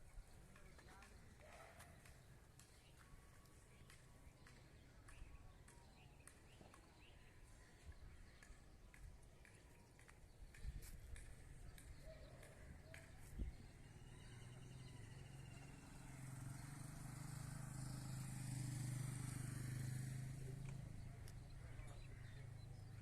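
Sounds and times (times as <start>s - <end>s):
heavy vehicle engine passing: 15.7s - 20.6s.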